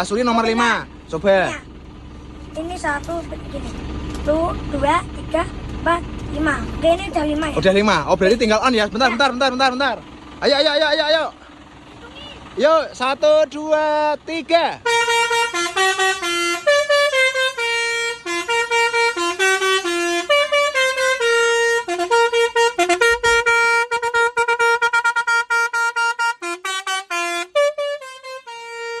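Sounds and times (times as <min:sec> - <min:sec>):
multi-tone horn playing a tune: 0:14.8 - 0:29.0.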